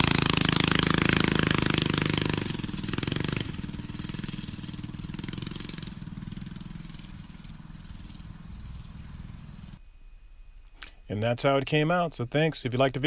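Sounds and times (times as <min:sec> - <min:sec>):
small engine running: 0:00.0 - 0:09.8.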